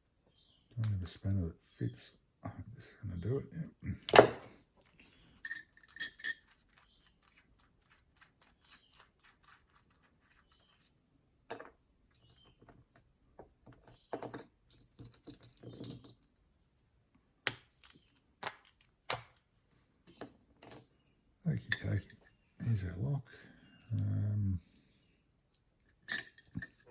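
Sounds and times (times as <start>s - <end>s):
sharp metal clicks and clinks: 5.4s - 7.4s.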